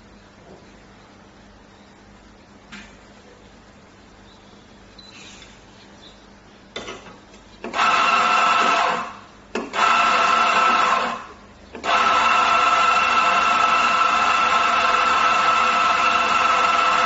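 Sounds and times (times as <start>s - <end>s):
coffee grinder motor whining: 7.7s - 17.0s.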